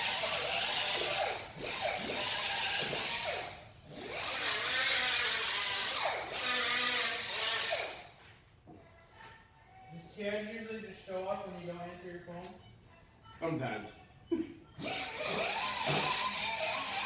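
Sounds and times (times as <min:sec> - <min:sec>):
power tool motor grinding: 0:00.0 - 0:08.1, 0:14.8 - 0:17.0.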